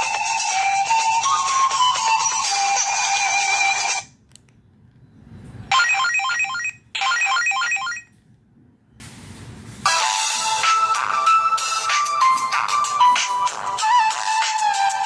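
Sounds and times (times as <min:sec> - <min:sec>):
melodic electronic ringtone: 0:00.0 - 0:04.0, 0:05.7 - 0:08.1, 0:09.9 - 0:15.0.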